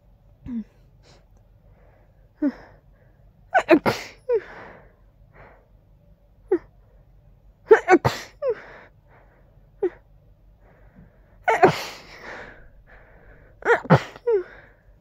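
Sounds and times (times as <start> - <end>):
stifled sneezes: 3.6 - 4.2, 7.7 - 8.5, 11.5 - 12.2, 13.6 - 14.4.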